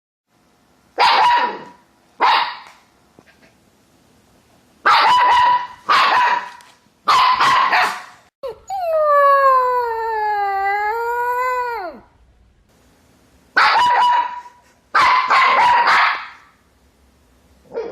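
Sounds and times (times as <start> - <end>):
dog barking: 1.0 - 2.8, 4.8 - 8.2, 13.6 - 16.5, 17.6 - 17.9
dog howling: 8.4 - 12.1.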